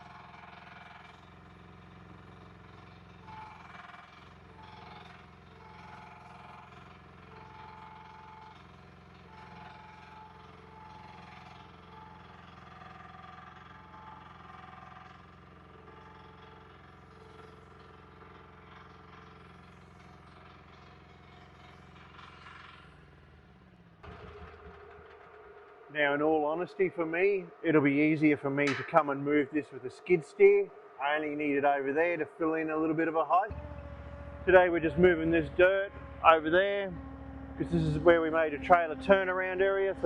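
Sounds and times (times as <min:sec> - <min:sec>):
small diesel engine running: 0:00.0 - 0:40.0
high whining tones: 0:24.1 - 0:40.0.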